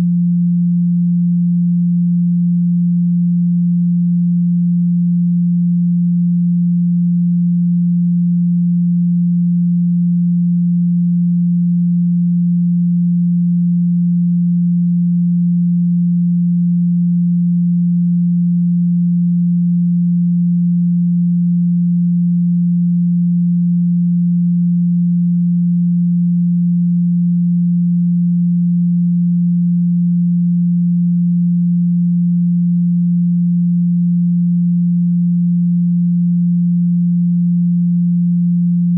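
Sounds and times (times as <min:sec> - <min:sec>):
steady low tone: 0:00.0 - 0:38.9.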